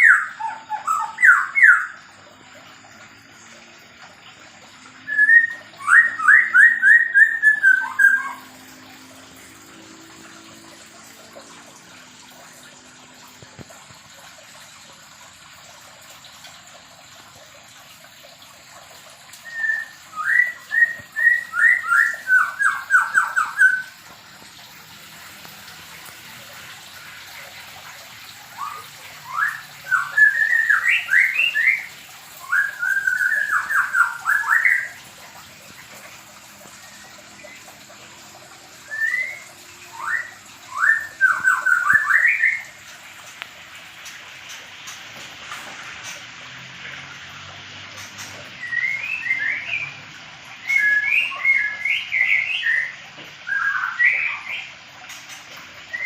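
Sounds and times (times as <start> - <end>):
bird calling sweeping notes: 0.0 - 2.1, 4.9 - 9.4, 19.4 - 24.4, 28.5 - 35.0, 36.8 - 42.8, 48.0 - 54.7.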